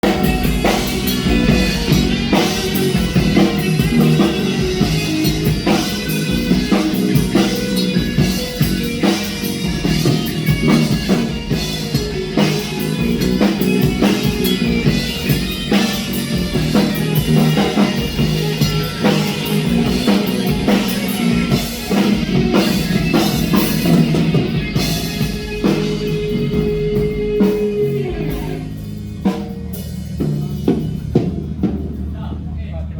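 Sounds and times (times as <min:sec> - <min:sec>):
rock band playing: 0:00.0 - 0:32.7
drums hitting: 0:00.0 - 0:32.8.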